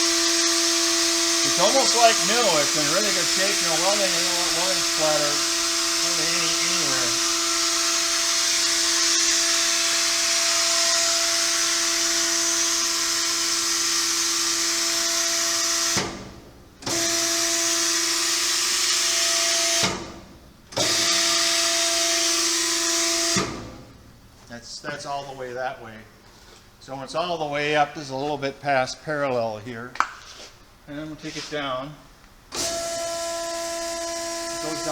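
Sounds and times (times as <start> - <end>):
welding positioner whining: 0.0 - 15.9, 32.5 - 34.9.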